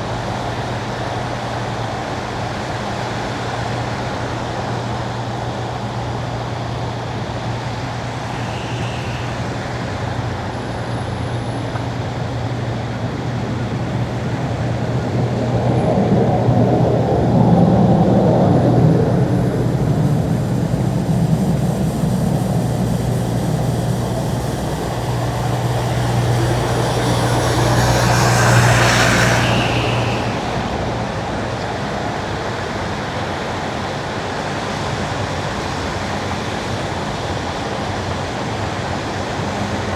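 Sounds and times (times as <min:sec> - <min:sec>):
tyres on wet road: 0:00.0 - 0:39.9
low hum: 0:07.5 - 0:12.4, 0:15.1 - 0:32.4.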